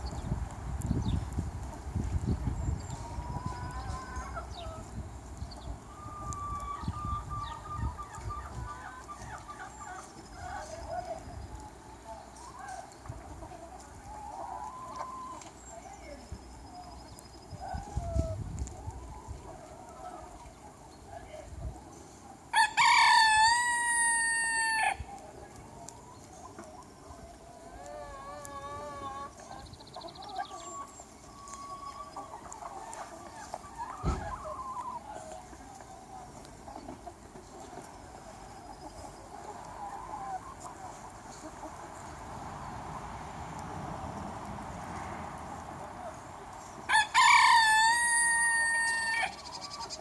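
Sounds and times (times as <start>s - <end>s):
chickens clucking and calling: 0.0s - 50.0s
rooster crowing: 22.6s - 25.0s, 46.9s - 49.4s.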